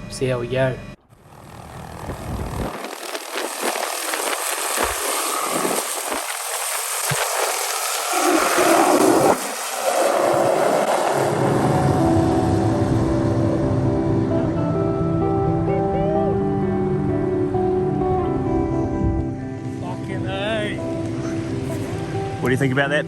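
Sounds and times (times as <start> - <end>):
rushing noise: 1.2 - 14.3
music with held notes: 11.7 - 23.0.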